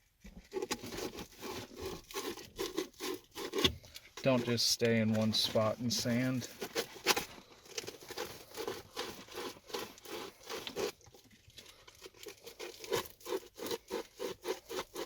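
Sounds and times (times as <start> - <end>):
hand sanding plastic: 0.4 - 15.0.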